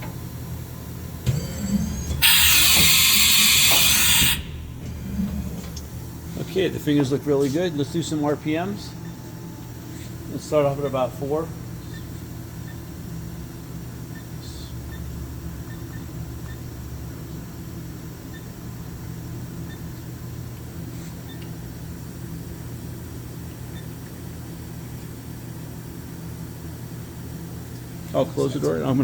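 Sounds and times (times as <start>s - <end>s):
machine spindle hum: 0.0s - 20.4s.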